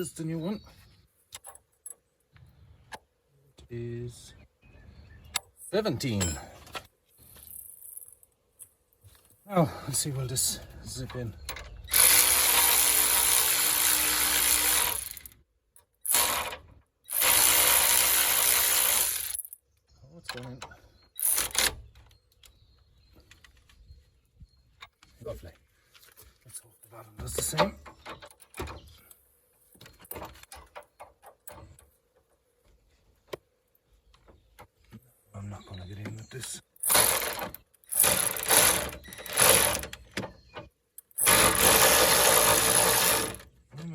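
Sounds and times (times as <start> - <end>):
cordless impact wrench: 11.9 - 15.4, 16.0 - 19.5, 21.2 - 21.8, 36.8 - 40.0, 41.1 - 43.5.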